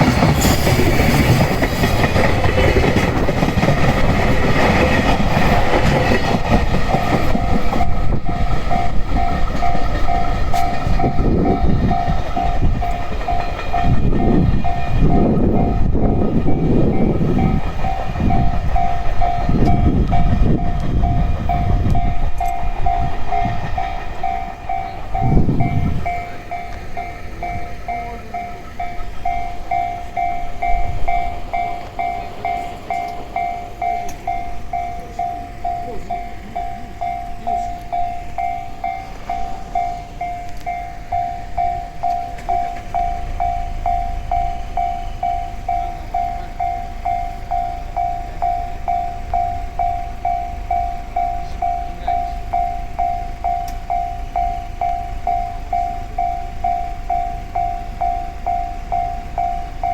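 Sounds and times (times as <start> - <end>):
level crossing warning bell: 0.0 - 59.9
train wheel rumble: 0.0 - 59.9.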